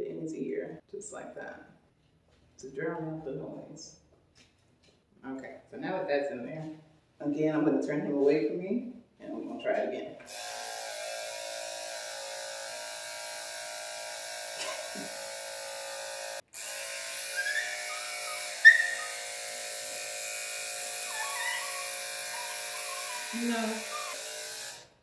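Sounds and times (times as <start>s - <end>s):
electric clippers humming: 10.3s - 25.0s
puppy whining: 14.6s - 15.1s, 17.2s - 19.3s, 20.8s - 24.4s
puppy yelping: 14.6s - 15.1s, 17.3s - 19.3s, 20.8s - 24.3s.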